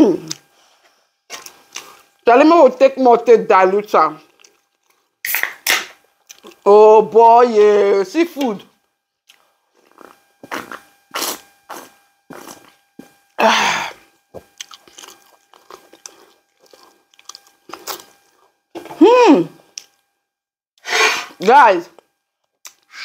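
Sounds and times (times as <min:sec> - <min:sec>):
crunchy chewing: 0:04.2 - 0:05.3, 0:06.1 - 0:06.7, 0:09.3 - 0:12.8, 0:14.4 - 0:18.6.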